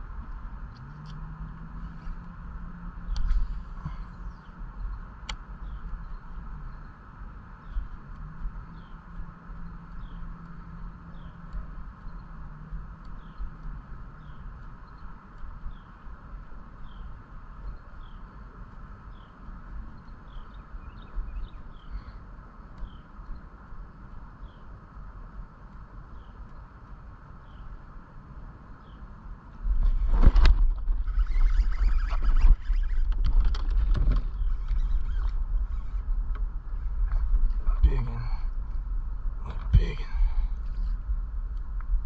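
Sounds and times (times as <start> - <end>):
steady hum: 0.0 - 42.0
falling chirp calls: 30.9 - 33.2.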